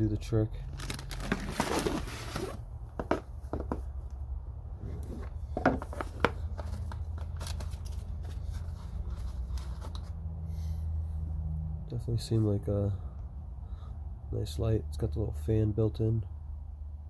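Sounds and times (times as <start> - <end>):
packaging clicks and rustles: 0.7 - 3.8, 5.1 - 10.1.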